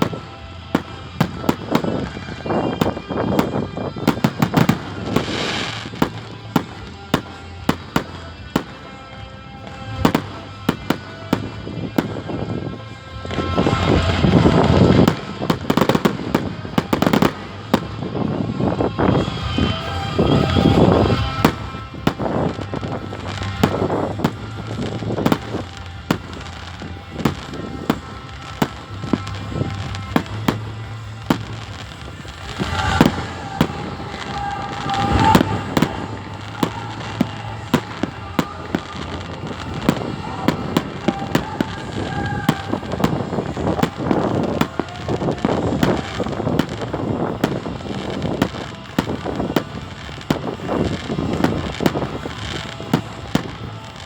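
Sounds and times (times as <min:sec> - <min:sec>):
fireworks bangs and crackles: 0:00.0 - 0:54.0.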